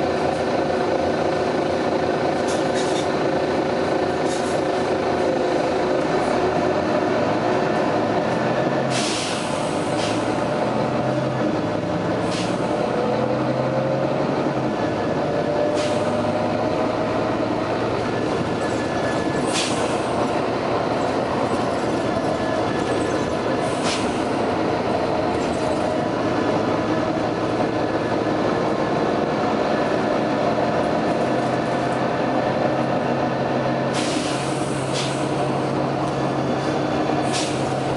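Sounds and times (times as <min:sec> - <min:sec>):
diesel bus running with whine: 0:00.0 - 0:37.9
air brake hisses: 0:08.9 - 0:10.4, 0:12.3 - 0:12.7, 0:15.7 - 0:16.2, 0:19.5 - 0:20.1, 0:23.6 - 0:24.2, 0:33.9 - 0:35.4, 0:37.3 - 0:37.8.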